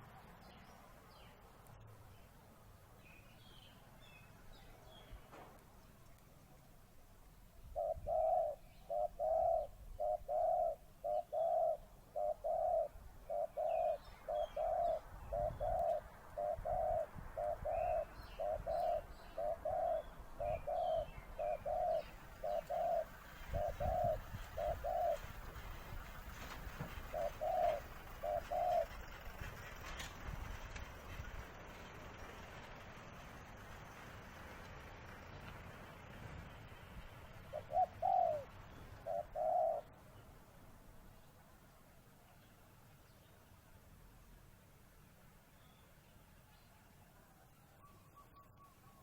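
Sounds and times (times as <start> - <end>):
small birds chirping: 0.0 - 30.1, 36.6 - 49.0
dove cooing: 7.7 - 29.4, 37.4 - 40.0.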